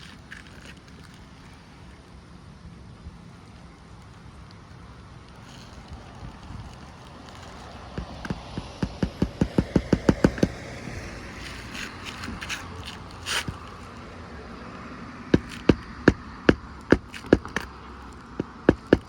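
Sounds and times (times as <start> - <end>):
shingles scraping and crinkling: 0.0 - 1.6, 5.2 - 19.0
hammer striking roofing nails: 7.9 - 10.8, 15.3 - 19.0.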